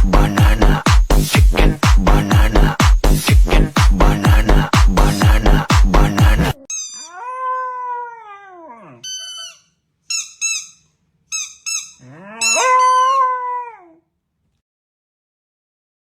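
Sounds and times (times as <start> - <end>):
dog yipping: 6.6 - 14.0
dog howling: 7.0 - 9.6, 12.0 - 14.0.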